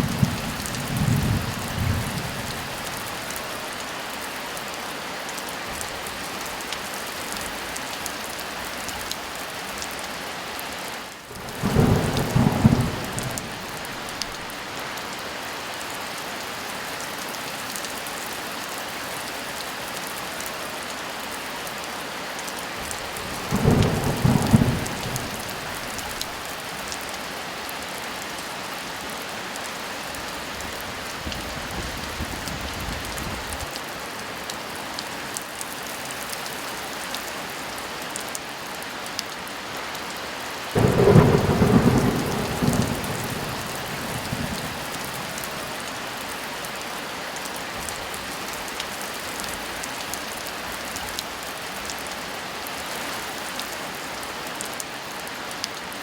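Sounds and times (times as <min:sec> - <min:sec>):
thunder rumbling: 0:00.0 - 0:03.0, 0:11.3 - 0:14.5, 0:23.3 - 0:26.4, 0:40.8 - 0:46.0
heavy rain: 0:00.0 - 0:56.0.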